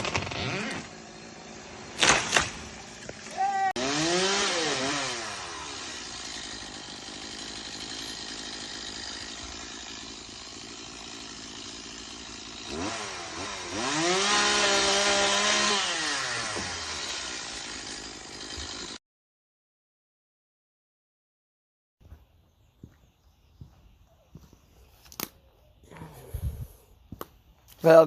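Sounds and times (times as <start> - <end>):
chainsaw engine revving: 0.0 - 19.0.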